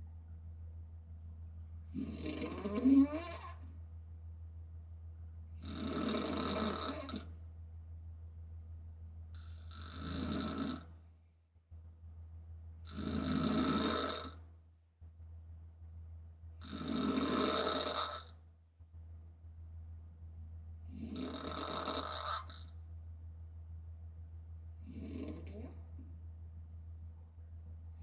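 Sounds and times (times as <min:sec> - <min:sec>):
low steady hum: 0:00.0 - 0:28.0
woman snoring: 0:01.9 - 0:03.7, 0:05.6 - 0:07.3, 0:09.4 - 0:10.9, 0:12.9 - 0:14.4, 0:16.6 - 0:18.3, 0:20.9 - 0:22.7, 0:24.8 - 0:25.8.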